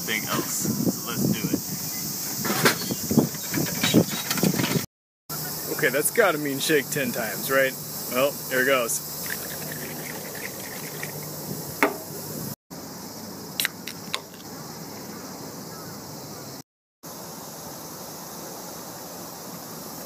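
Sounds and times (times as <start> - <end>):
steady background hiss: 5.3 - 20.0.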